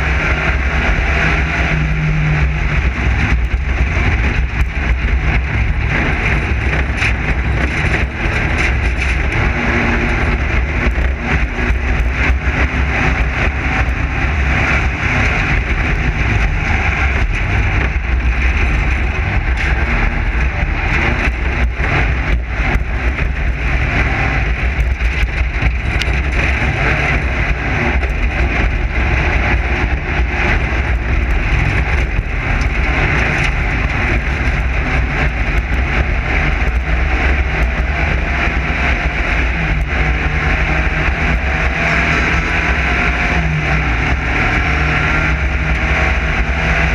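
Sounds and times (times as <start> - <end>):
race car engine drone: 0.0 - 46.9
chassis knocks and rattles: 2.8 - 38.2.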